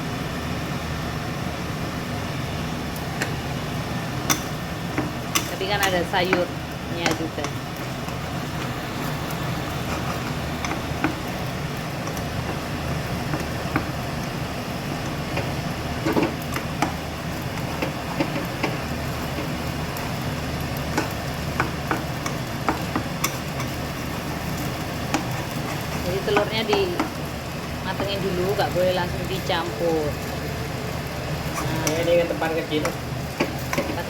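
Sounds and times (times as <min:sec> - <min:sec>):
egg sizzling in a pan: 0:00.0 - 0:34.0
spatula scraping a pan: 0:07.8 - 0:13.9, 0:15.2 - 0:27.2.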